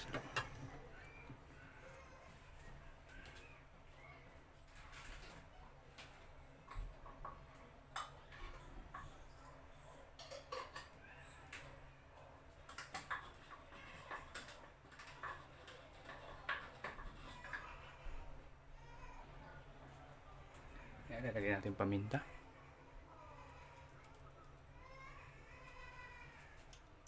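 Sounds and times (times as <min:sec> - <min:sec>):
kitchen utensils clicking and tapping: 0:00.0 - 0:00.8, 0:06.6 - 0:11.8, 0:12.6 - 0:17.7.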